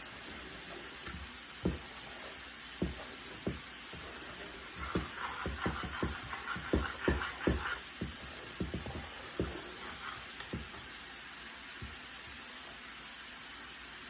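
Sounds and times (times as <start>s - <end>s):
spoon stirring batter in bowl: 0.0s - 10.9s
faint steady hiss: 0.0s - 14.0s.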